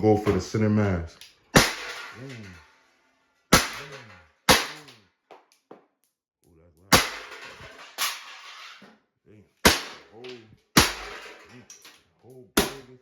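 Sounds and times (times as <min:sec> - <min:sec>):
air pistol shots: 0:01.6 - 0:02.3, 0:03.6 - 0:04.9.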